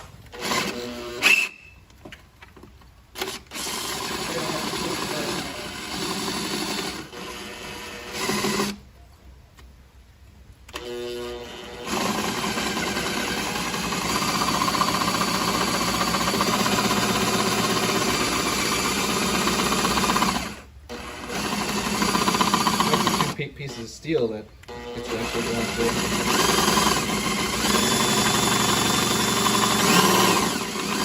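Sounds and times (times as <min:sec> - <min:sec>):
electric drill boring through steel: 0:03.2 - 0:08.8, 0:10.7 - 0:23.4, 0:24.7 - 0:31.0.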